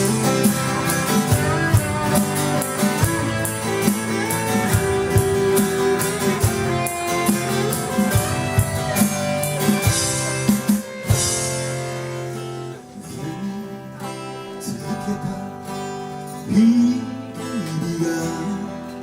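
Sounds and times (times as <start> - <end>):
drum kit steady beat: 0.0 - 12.8
electric guitars playing: 0.0 - 19.0.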